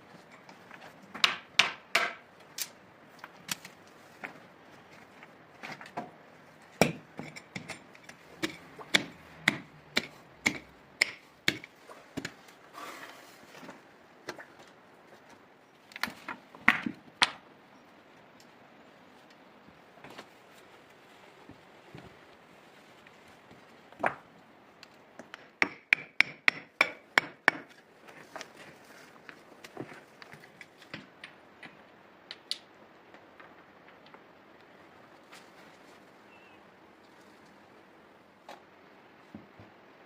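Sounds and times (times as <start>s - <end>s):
short scrape: 12.7s - 13.5s.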